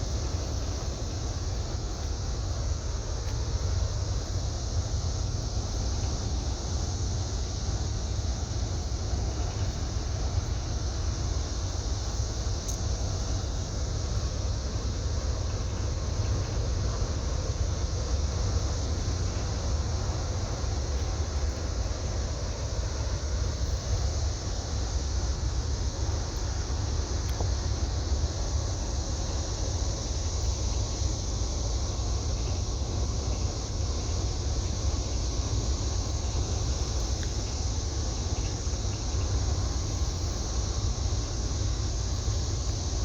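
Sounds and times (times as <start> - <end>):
hiss: 0.0 - 43.0.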